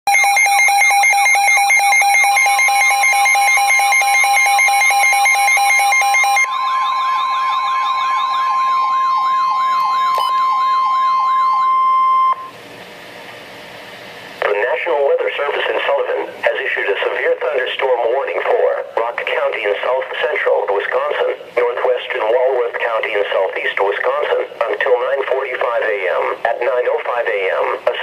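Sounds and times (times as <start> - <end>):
pulsed beeping: 0.1 - 12.5
wailing electronic siren: 0.1 - 12.5
steady alarm tone: 0.1 - 12.6
faint radio hiss: 14.4 - 28.0.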